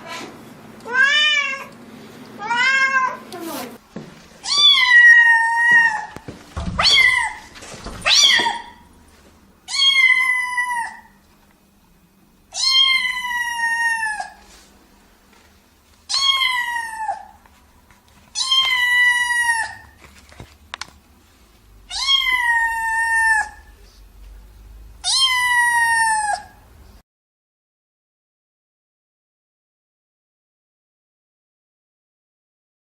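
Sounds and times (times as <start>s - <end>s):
cat meowing: 0.8s - 1.7s, 2.4s - 3.2s, 4.4s - 6.2s, 6.8s - 8.8s, 9.7s - 11.2s, 12.5s - 14.4s, 16.1s - 17.4s, 18.4s - 19.9s, 21.9s - 23.7s, 25.0s - 26.6s.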